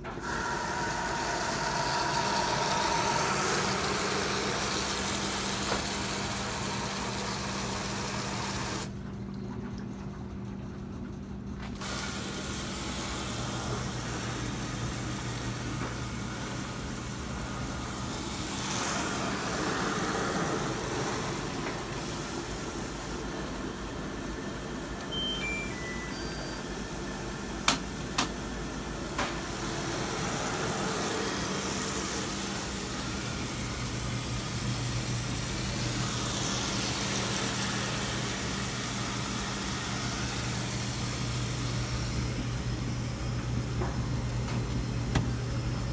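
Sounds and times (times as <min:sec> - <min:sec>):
water running into washing machine: 0:00.0 - 0:09.0, 0:11.8 - 0:24.4, 0:29.4 - 0:45.9
falling electronic beeps: 0:25.1 - 0:26.8.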